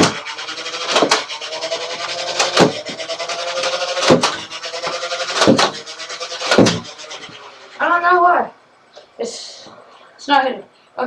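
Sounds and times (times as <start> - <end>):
toy blaster dart shots: 0.0 - 7.0
toy blaster motors whining: 0.0 - 8.3.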